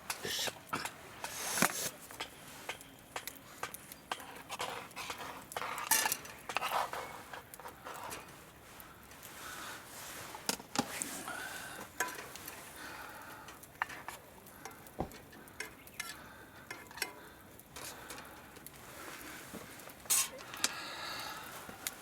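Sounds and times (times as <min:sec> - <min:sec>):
utensils stirring and scraping pan: 0:00.1 - 0:12.8, 0:13.8 - 0:14.8, 0:17.8 - 0:20.6
light clicks and clinks: 0:02.1 - 0:09.4, 0:10.4 - 0:22.0.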